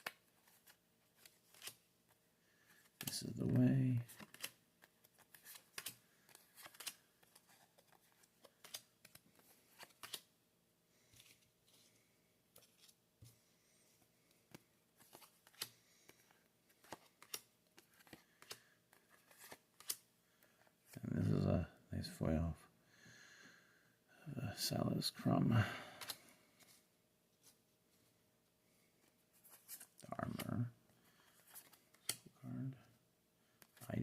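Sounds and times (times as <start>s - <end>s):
trading cards being handled: 0.0s - 10.3s, 11.0s - 13.4s, 14.0s - 21.5s, 28.9s - 30.6s, 31.2s - 32.3s.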